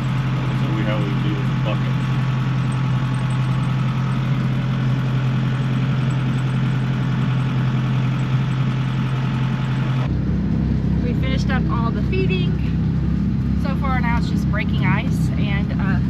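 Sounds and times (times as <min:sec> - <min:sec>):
tractor engine droning: 0:00.0 - 0:16.0.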